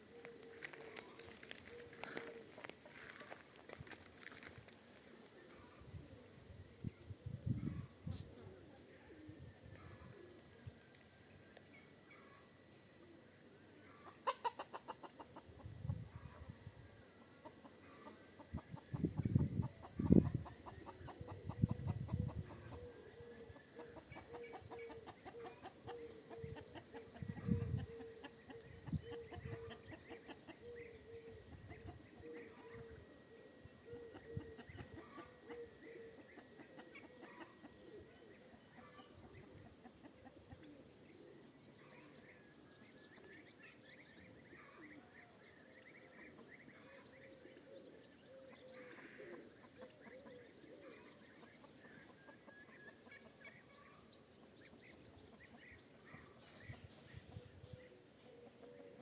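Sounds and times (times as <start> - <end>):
chickens clucking: 13.8 - 16.6, 17.2 - 32.9, 34.0 - 40.9, 48.9 - 54.1.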